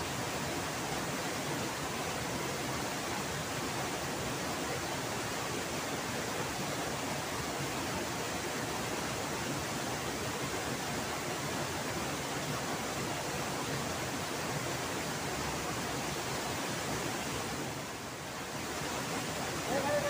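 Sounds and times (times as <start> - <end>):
waterfall rushing water: 0.0 - 20.0.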